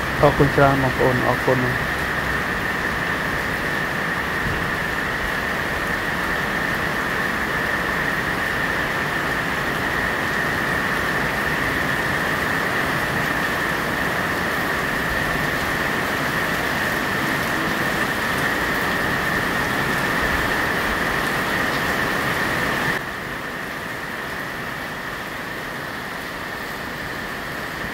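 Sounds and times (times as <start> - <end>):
heavy rain pouring: 0.0 - 27.9.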